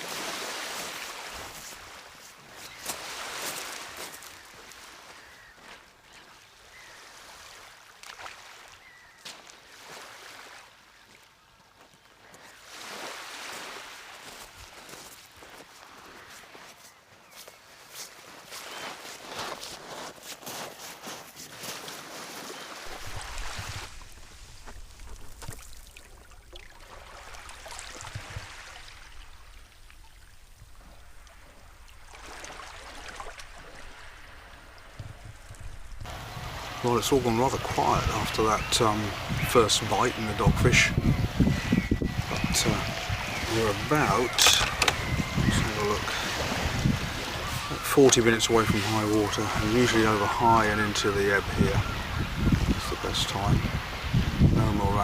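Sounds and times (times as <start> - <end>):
small waves washing on beach: 0.0 - 55.0.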